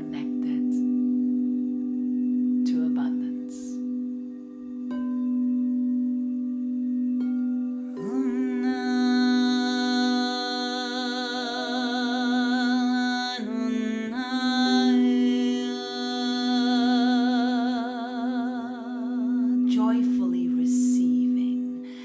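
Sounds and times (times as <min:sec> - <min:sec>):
singing bowl drone: 0:00.0 - 0:22.0
person singing wordless notes: 0:07.9 - 0:22.0.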